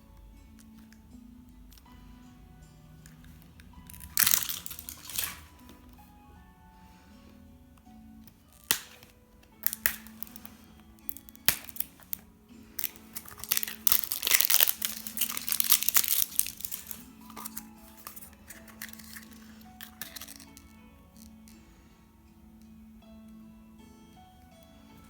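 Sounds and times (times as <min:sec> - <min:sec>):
light background music: 0:00.0 - 0:25.0
plastic wrapper crinkling and tearing: 0:03.8 - 0:05.7, 0:08.5 - 0:21.3.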